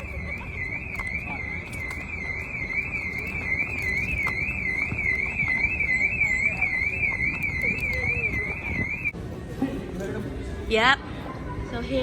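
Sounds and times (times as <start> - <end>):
warbling electronic alarm: 0.0 - 9.2.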